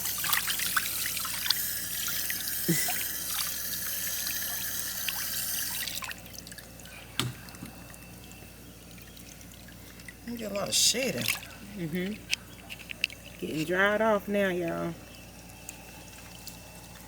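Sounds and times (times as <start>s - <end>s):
water running and splashing: 0.0s - 6.8s
water dripping: 0.0s - 17.0s.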